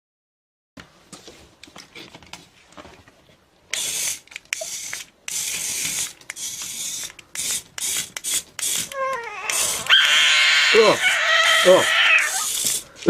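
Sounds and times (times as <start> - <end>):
loud hissing bursts: 3.8 - 13.0.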